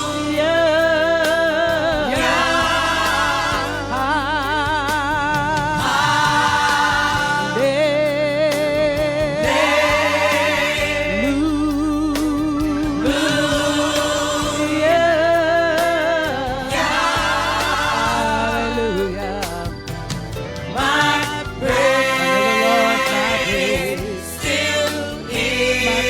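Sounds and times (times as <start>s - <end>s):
band accompaniment: 0.0s - 26.0s
gospel choir singing: 0.0s - 26.0s.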